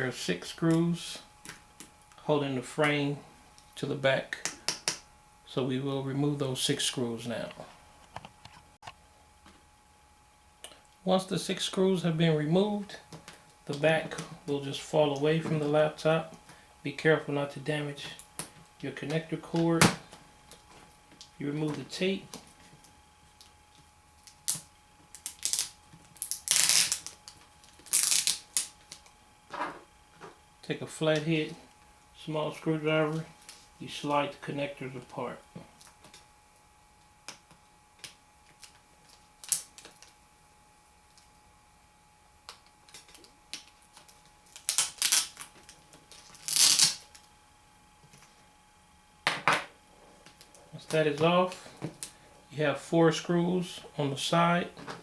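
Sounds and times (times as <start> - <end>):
tape clicks and scratches: 24.2 - 29.1, 42.5 - 47.2
tape ripping: 24.2 - 29.1, 38.0 - 40.1, 42.9 - 47.2.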